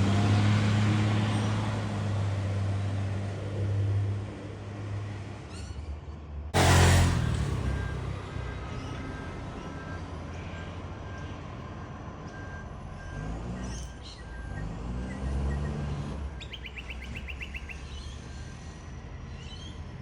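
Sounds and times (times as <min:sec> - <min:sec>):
diesel truck engine revving: 0:00.0 - 0:05.1, 0:06.6 - 0:10.0, 0:12.9 - 0:16.4
reversing beeper: 0:06.6 - 0:19.1
bird chirps: 0:16.4 - 0:19.9.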